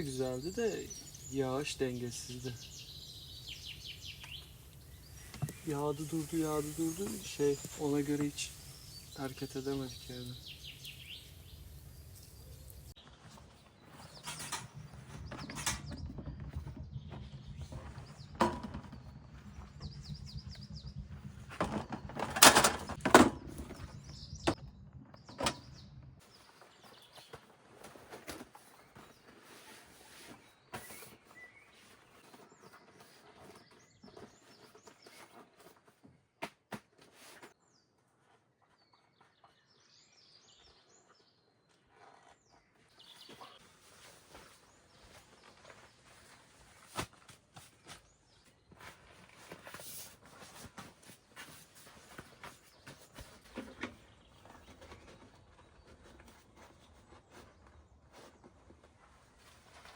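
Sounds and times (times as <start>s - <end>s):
small birds chirping: 0.0s - 22.3s, 23.5s - 35.8s, 37.7s - 47.0s.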